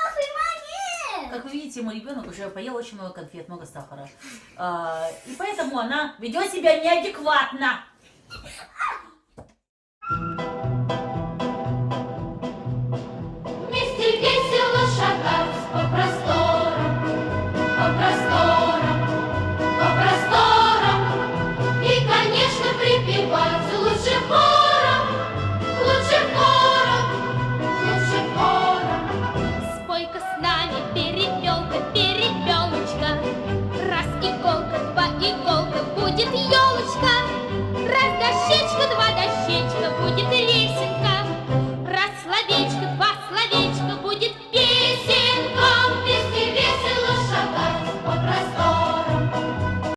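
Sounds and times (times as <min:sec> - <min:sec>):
music with singing voices: 0:10.0 - 0:49.9.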